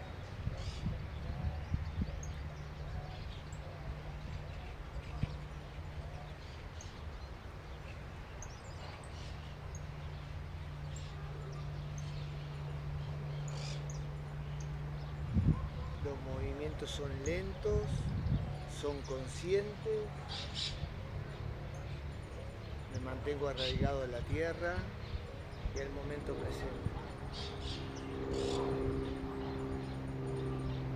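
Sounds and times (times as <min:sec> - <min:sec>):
steady low rumble: 0:09.6 - 0:30.9.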